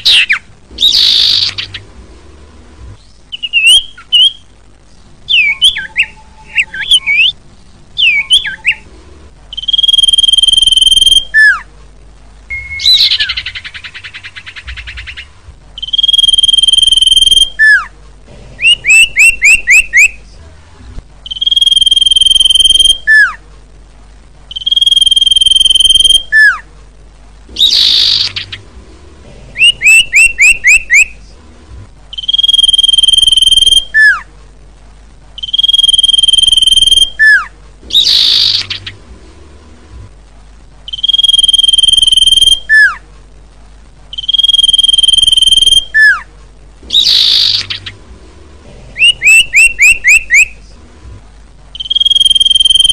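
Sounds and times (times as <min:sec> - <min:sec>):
bird high whistles: 0:09.6 - 0:11.6, 0:15.8 - 0:17.8, 0:21.3 - 0:23.4, 0:24.5 - 0:26.6, 0:29.6 - 0:31.1, 0:32.2 - 0:34.2, 0:35.4 - 0:38.9, 0:40.9 - 0:43.0, 0:44.2 - 0:46.2, 0:46.9 - 0:47.9, 0:49.0 - 0:50.5, 0:51.8 - 0:52.9
bird quick rising chirps: 0:12.5 - 0:17.9, 0:40.9 - 0:43.0, 0:51.8 - 0:52.9.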